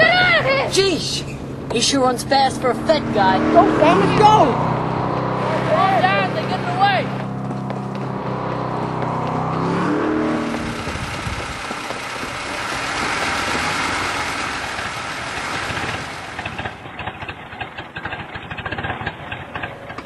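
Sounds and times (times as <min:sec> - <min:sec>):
car engine revving and droning: 0:00.0 - 0:20.0
engine sputtering clicks: 0:06.8 - 0:20.0.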